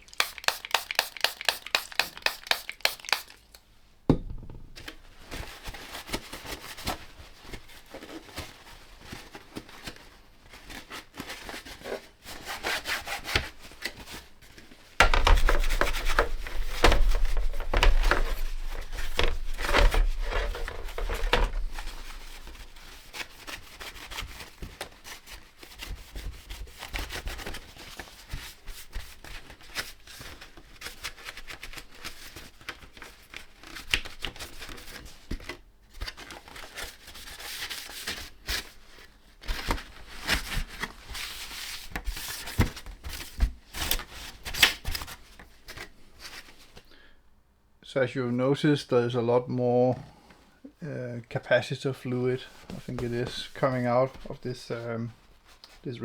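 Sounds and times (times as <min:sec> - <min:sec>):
rubbing and scrubbing strokes: 0:00.0 - 0:03.4, 0:15.0 - 0:24.4.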